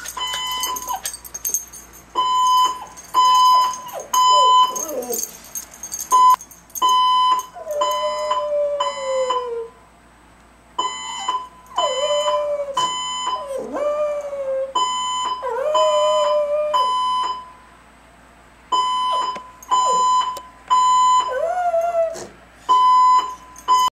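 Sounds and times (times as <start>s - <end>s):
fire alarm beeping: 0.0s - 1.1s, 2.2s - 4.9s, 6.1s - 9.4s, 10.8s - 13.5s, 14.8s - 17.6s, 18.7s - 21.4s, 22.7s - 23.9s
dog yelps: 0.1s - 1.3s, 2.6s - 5.3s
dog howling: 3.8s - 5.3s, 7.5s - 9.8s.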